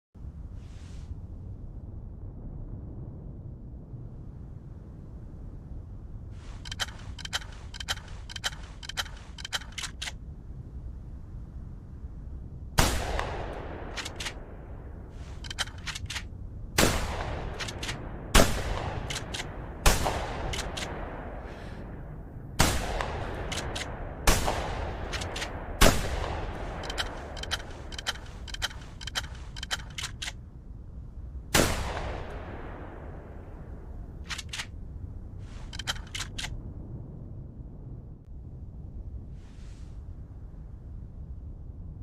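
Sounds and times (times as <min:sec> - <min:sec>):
shotgun action clicking: 0:06.7 - 0:10.2, 0:13.9 - 0:14.4, 0:15.4 - 0:16.3, 0:18.9 - 0:19.5, 0:20.5 - 0:21.0, 0:23.4 - 0:23.9, 0:25.0 - 0:25.6, 0:26.7 - 0:30.4, 0:34.2 - 0:34.7, 0:35.6 - 0:36.5
shotgun blasts with echo: 0:12.8 - 0:16.2, 0:16.8 - 0:22.0, 0:22.6 - 0:30.2, 0:31.5 - 0:34.6.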